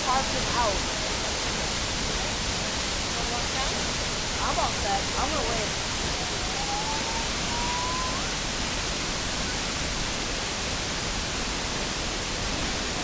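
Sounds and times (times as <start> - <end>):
waterfall rushing: 0.0 - 13.0
faint thin whistle: 5.4 - 8.4.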